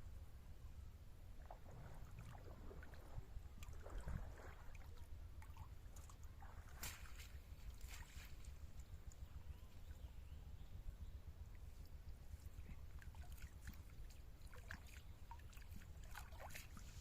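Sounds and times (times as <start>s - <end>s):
water splashing and sloshing: 1.3s - 9.3s, 11.5s - 17.0s.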